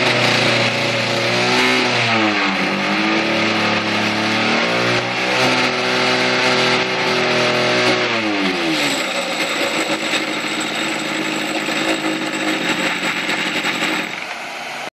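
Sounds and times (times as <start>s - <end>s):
chainsaw engine running: 0.0s - 14.4s.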